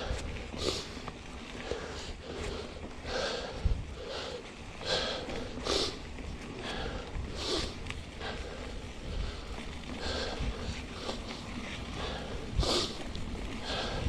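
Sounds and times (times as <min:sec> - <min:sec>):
man breathing hard: 0:00.0 - 0:14.0.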